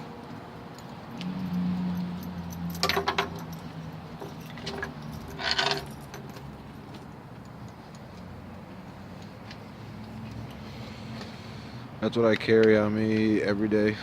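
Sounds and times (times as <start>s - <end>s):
keys jingling: 0.7s - 8.1s.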